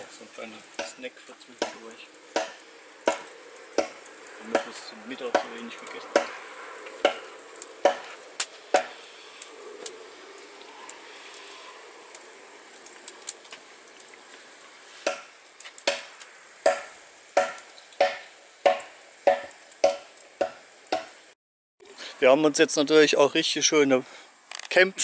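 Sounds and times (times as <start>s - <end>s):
axe chopping wood: 1.6s - 1.8s, 2.4s - 4.7s, 5.3s - 6.4s, 7.0s - 9.0s, 15.0s - 21.1s.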